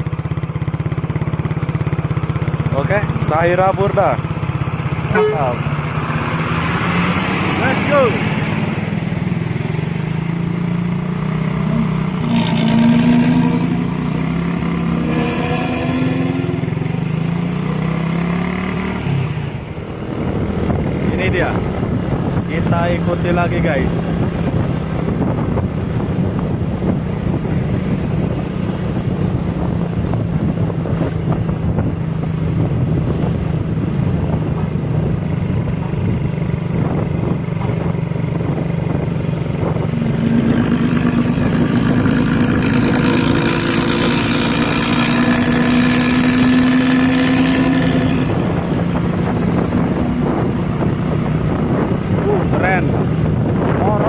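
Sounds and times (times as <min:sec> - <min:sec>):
bus exhaust droning: 0:00.0 - 0:53.8
engine and road noise: 0:00.0 - 0:54.0.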